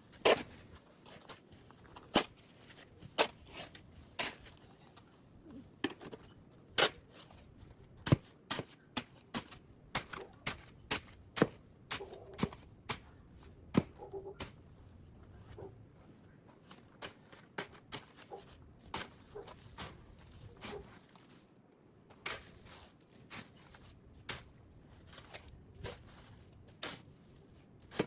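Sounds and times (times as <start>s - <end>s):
packed snow crunching: 0.1s - 4.8s, 16.6s - 21.5s, 22.2s - 28.0s.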